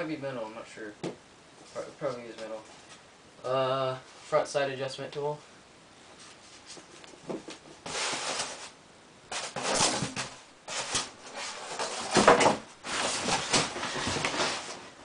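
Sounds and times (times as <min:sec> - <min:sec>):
cardboard packaging rustling: 0:06.2 - 0:15.0.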